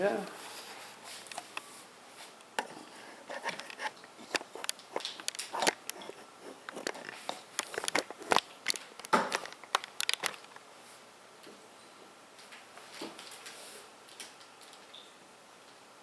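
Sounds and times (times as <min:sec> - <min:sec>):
plastic handling clicks: 0:02.5 - 0:10.6.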